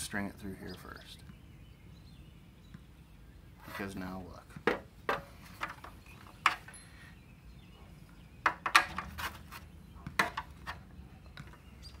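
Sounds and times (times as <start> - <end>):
hard parts clicking and knocking: 4.6 - 6.8, 8.4 - 9.1.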